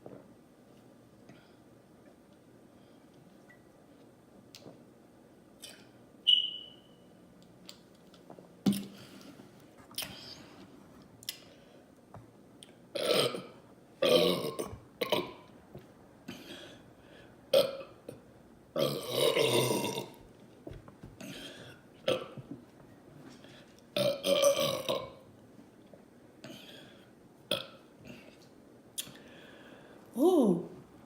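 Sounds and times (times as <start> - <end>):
woman belching: 13.0 - 15.5, 18.8 - 20.2, 24.0 - 25.2.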